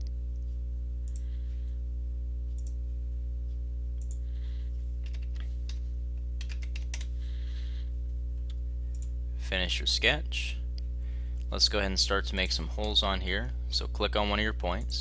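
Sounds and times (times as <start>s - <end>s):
low electrical hum: 0.0s - 15.0s
computer mouse and keyboard clicks: 5.0s - 5.8s, 6.4s - 7.1s.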